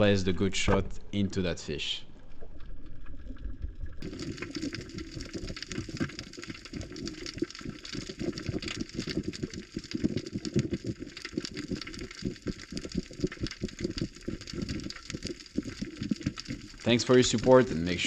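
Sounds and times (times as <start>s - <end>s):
muffled underwater rumble: 0.0s - 18.0s
underwater crackle of clicks: 2.1s - 18.0s.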